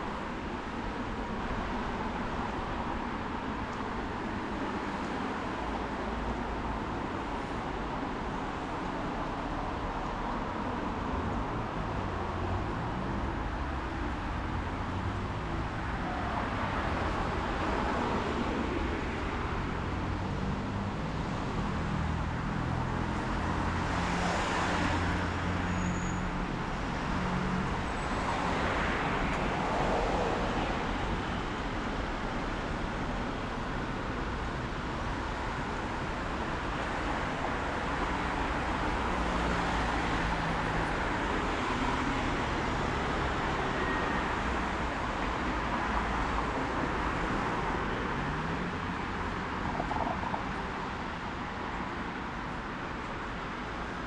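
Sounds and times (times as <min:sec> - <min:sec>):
cars passing on wet road: 0:16.5 - 0:54.0.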